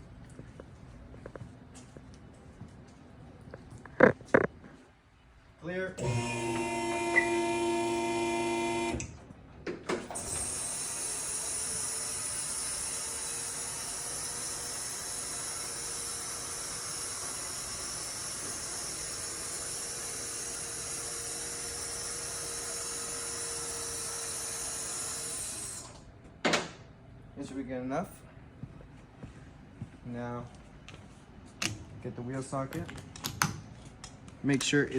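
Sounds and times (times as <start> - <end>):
lift pump motor humming: 6.0 - 26.2.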